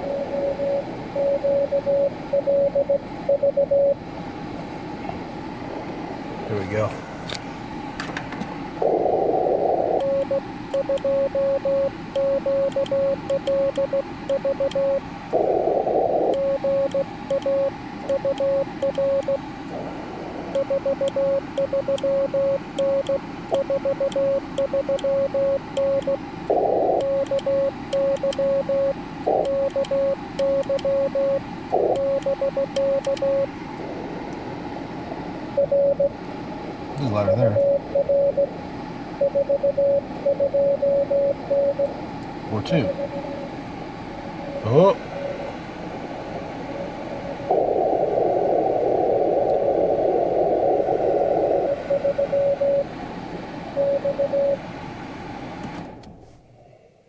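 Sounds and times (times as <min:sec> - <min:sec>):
morse code tone: 0:00.0 - 0:04.0, 0:08.8 - 0:19.5, 0:20.5 - 0:33.5, 0:35.6 - 0:36.2, 0:37.2 - 0:38.5, 0:39.2 - 0:41.9, 0:42.6 - 0:43.3, 0:47.5 - 0:52.9, 0:53.7 - 0:54.6
radio band noise hiss: 0:05.8 - 0:07.4, 0:08.7 - 0:10.5, 0:15.0 - 0:17.2, 0:19.4 - 0:20.7, 0:26.5 - 0:27.3, 0:31.7 - 0:32.2, 0:36.9 - 0:37.7, 0:42.4 - 0:43.4, 0:44.4 - 0:53.0.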